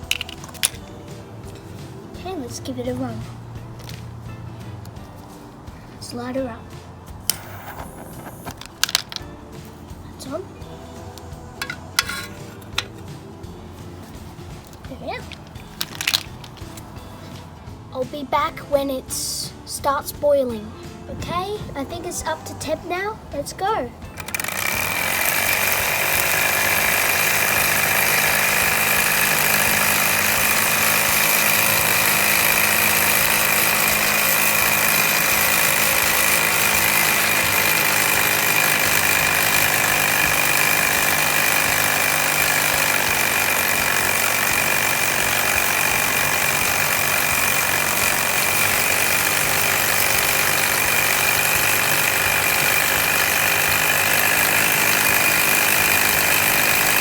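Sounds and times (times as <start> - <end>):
model steam engine rattling: 24.1 - 57.0.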